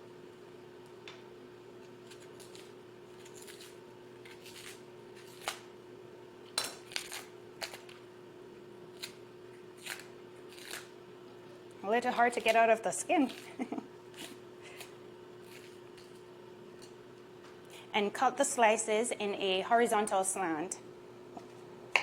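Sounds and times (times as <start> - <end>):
faint hum: 0.0 - 22.0
plantain skin tearing: 2.0 - 5.7, 6.8 - 8.0, 8.9 - 9.2, 9.8 - 11.0, 13.2 - 16.3.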